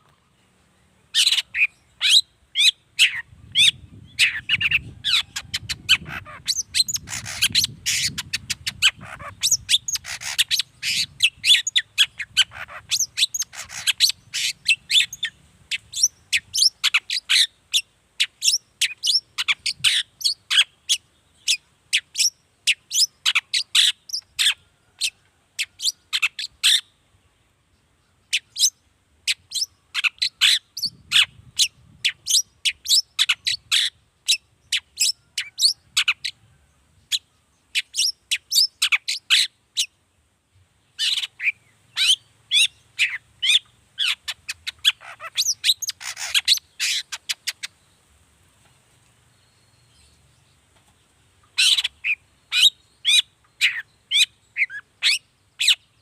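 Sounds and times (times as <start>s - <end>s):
bird singing chattering notes: 1.1s - 24.6s, 37.1s - 39.9s, 41.0s - 47.8s.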